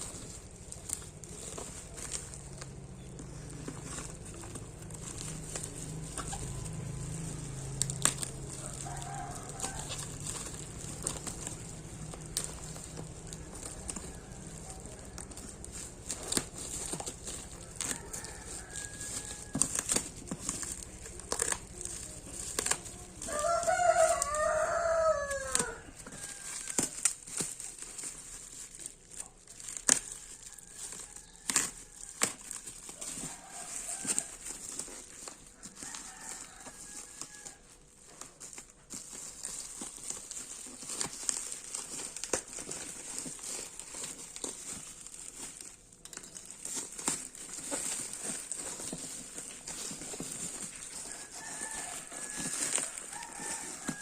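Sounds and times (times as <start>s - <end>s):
parcel clicking and crinkling: 0.0s - 54.0s
rooster crowing: 5.1s - 20.6s, 22.1s - 27.1s, 30.0s - 37.8s, 46.7s - 54.0s.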